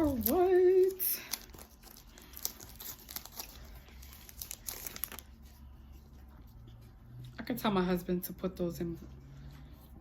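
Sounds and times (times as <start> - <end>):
card packaging crinkling: 0.0 - 5.8.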